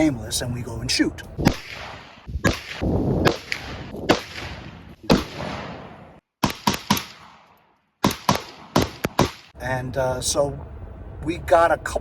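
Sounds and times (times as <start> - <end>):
gunshots ringing out: 1.4 - 9.6.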